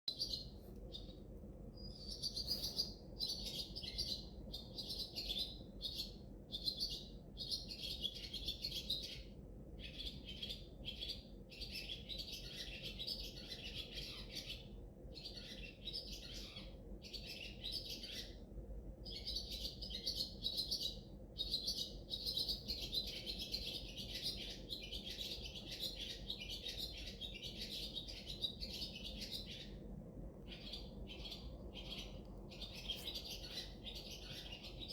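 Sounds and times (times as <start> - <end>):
birds chirping: 19.1 - 34.9.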